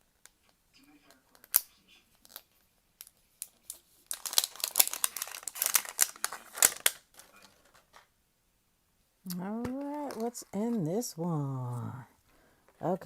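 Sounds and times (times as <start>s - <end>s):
plastic packaging crinkling: 2.2s - 8.1s
packaging clicks: 3.4s - 8.0s.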